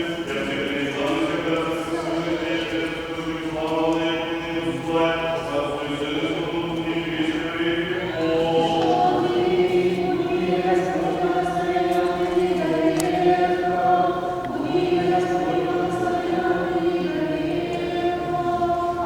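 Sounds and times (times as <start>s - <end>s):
group of voices chanting: 8.0s - 19.0s.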